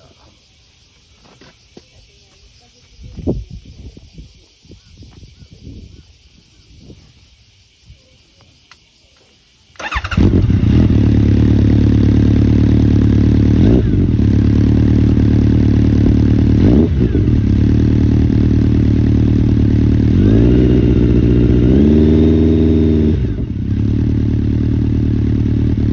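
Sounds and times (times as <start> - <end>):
motorcycle engine idling and revving: 9.8 - 25.9.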